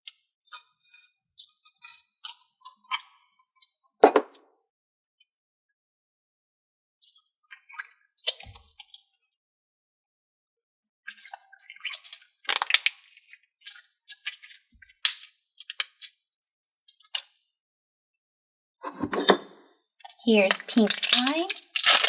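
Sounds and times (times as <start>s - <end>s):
slime crackling and popping: 12.5s - 12.9s, 20.5s - 22.0s.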